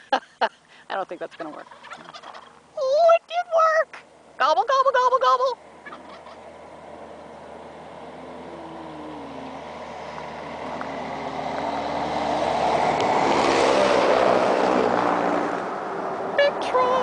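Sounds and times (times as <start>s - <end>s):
truck passing by: 5.6s - 17.0s.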